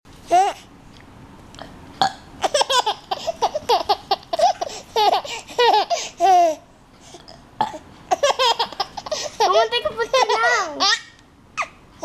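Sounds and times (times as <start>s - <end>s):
baby laughing: 2.4s - 6.6s, 8.1s - 11.8s.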